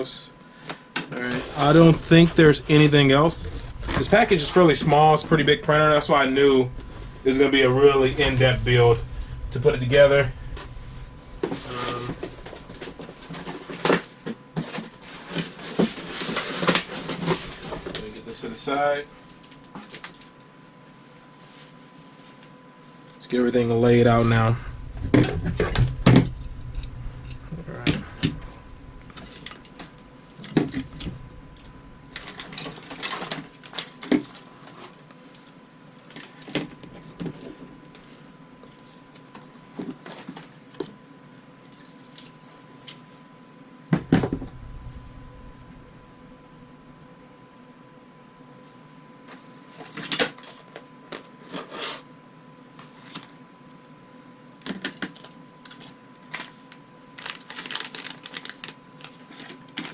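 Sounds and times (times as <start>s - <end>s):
faint steady tone: 22.9s - 32.8s
packaging rustling: 28.0s - 35.0s, 55.2s - 59.9s.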